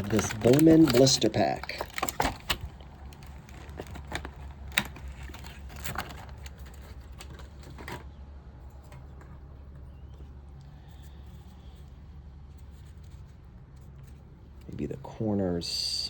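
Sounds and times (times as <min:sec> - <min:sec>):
plastic blister pack crackling: 0:00.0 - 0:08.1.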